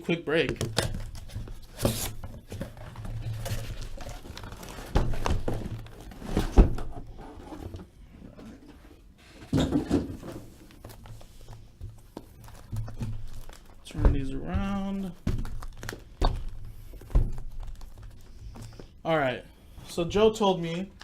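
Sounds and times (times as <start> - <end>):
cardboard boxes thunking on table: 4.4 - 7.8, 9.4 - 10.6.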